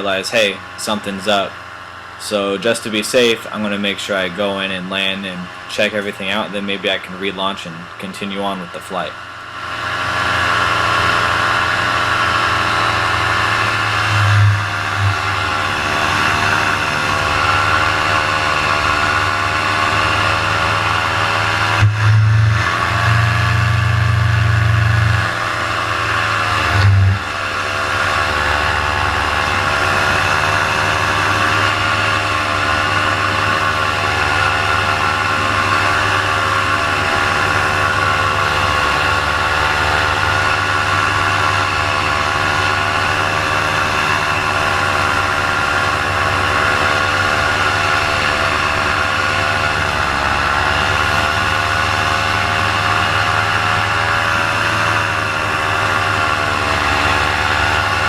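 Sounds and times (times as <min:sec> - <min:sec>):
paramotor engine running: 0:00.0 - 0:58.0
heavy low rumble: 0:12.9 - 0:19.4, 0:20.6 - 0:40.5.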